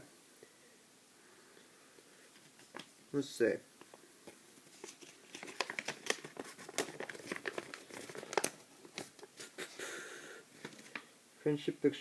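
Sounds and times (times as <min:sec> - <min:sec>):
crinkling and rustling by hand: 0:02.0 - 0:09.8, 0:10.5 - 0:11.2.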